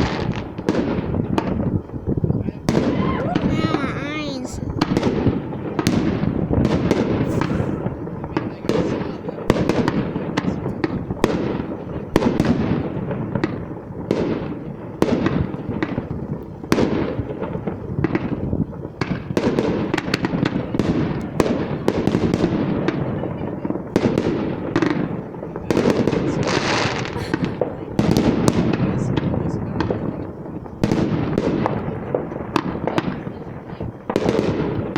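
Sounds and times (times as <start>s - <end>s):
fireworks bangs: 0.0s - 34.9s
fireworks crackling: 3.4s - 5.2s, 6.0s - 8.9s.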